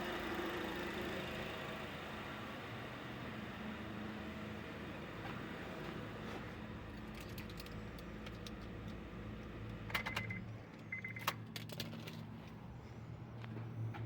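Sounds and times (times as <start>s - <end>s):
short electronic beeps: 10.1s - 11.3s.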